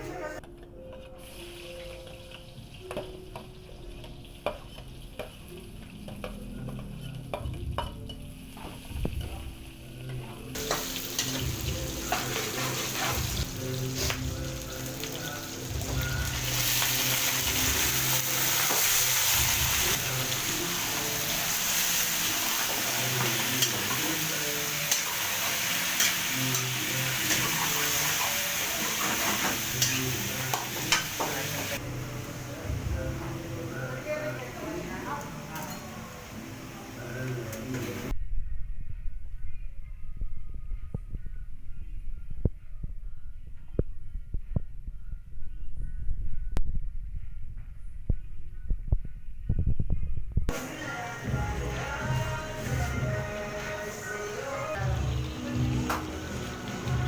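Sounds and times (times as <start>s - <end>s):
chicken sizzling in a pan: 10.6s - 31.8s
utensil scraping a pan: 12.0s - 13.4s.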